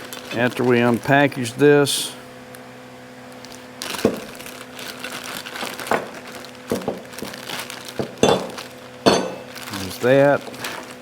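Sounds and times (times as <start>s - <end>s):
packaging crinkling: 0.0s - 1.1s, 3.3s - 11.0s
fan humming: 0.0s - 11.0s.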